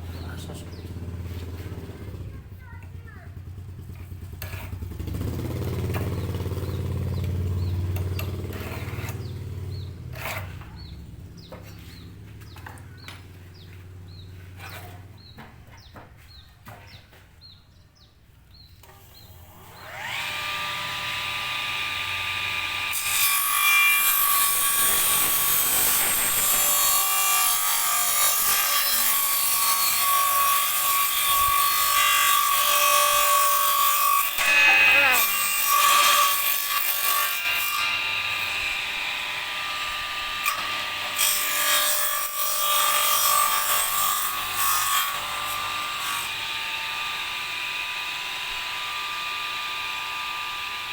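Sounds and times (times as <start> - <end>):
low engine hum: 0.0 - 2.6
saw blade cutting wood: 4.4 - 15.8, 18.8 - 50.9
circular saw motor whining: 19.0 - 22.9.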